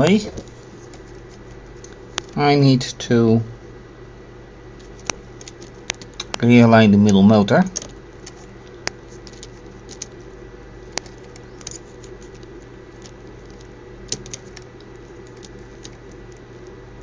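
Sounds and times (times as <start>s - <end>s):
steady low hum: 0.0s - 17.0s
plastic parts clicking and rattling: 4.8s - 16.7s.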